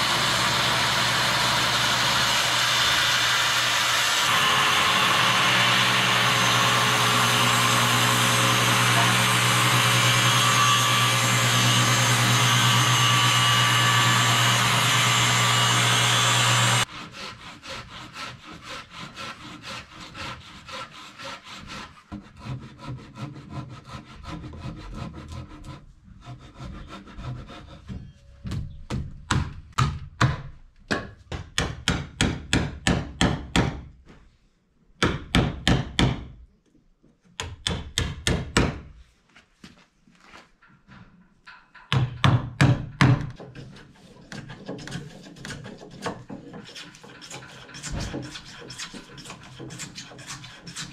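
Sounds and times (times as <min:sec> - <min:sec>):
power tool humming: 0:00.0 - 0:16.9
hand saw cutting wood: 0:00.0 - 0:28.0, 0:43.2 - 0:50.9.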